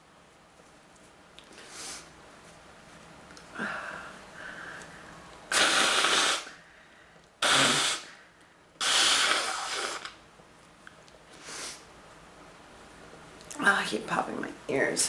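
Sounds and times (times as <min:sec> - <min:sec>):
nose being blown hard: 0:05.5 - 0:06.6, 0:07.4 - 0:08.2, 0:08.8 - 0:10.2.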